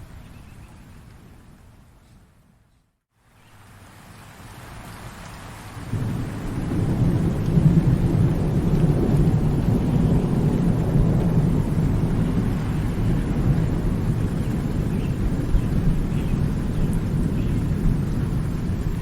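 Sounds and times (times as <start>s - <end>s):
rain falling: 0.0s - 19.0s
thunder rumbling: 5.8s - 19.0s.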